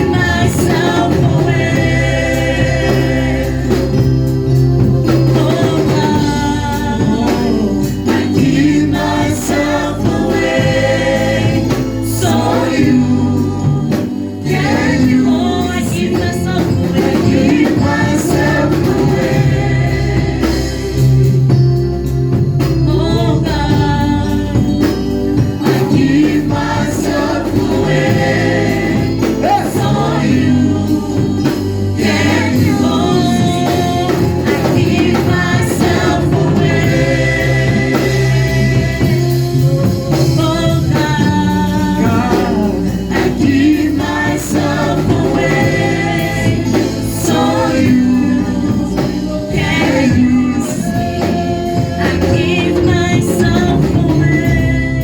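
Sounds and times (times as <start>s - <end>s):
choir singing gospel song: 0.0s - 55.0s.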